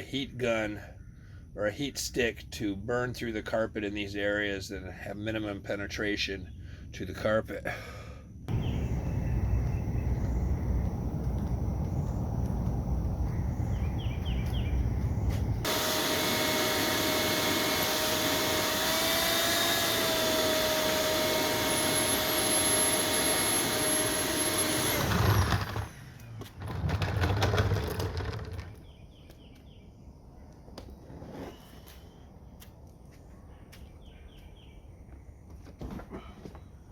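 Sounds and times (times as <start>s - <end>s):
faint bird chirps: 8.5s - 12.3s
heat gun whining: 15.6s - 26.0s.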